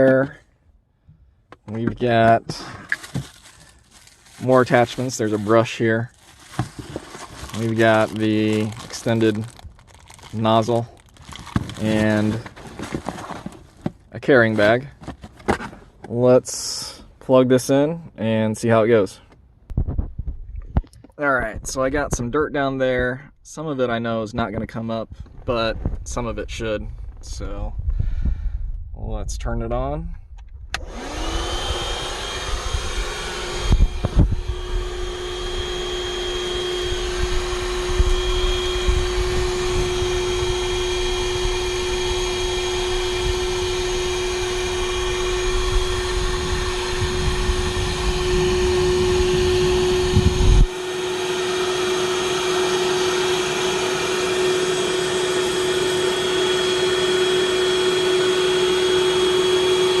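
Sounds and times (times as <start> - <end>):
vacuum cleaner motor whine: 6.3 - 9.0, 30.8 - 60.0
heavy low rumble: 19.7 - 30.8, 32.4 - 50.7.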